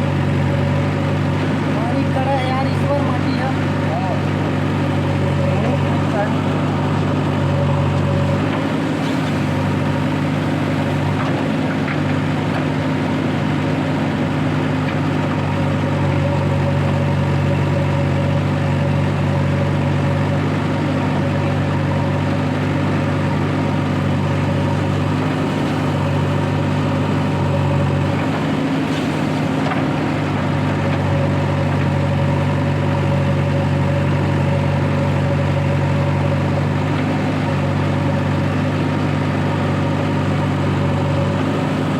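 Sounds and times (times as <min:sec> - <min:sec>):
diesel engine idling: 0:00.0 - 0:41.9.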